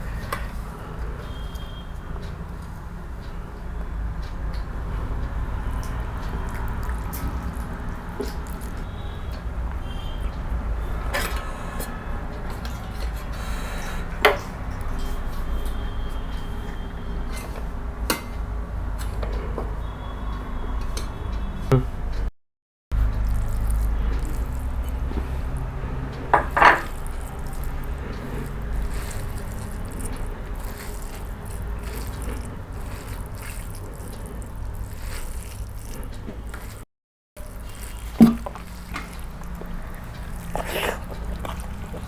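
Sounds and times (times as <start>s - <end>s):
wet chewing: 4.9s - 11.8s, 23.0s - 42.0s
hand mixing rice: 5.5s - 8.9s, 23.0s - 36.8s, 37.4s - 42.0s.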